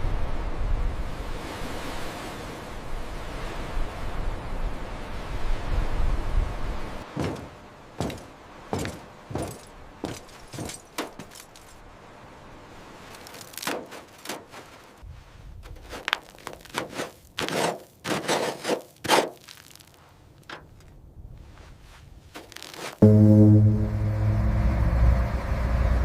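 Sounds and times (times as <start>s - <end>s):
short knocks clanks and scrapes: 7.2s - 11.8s.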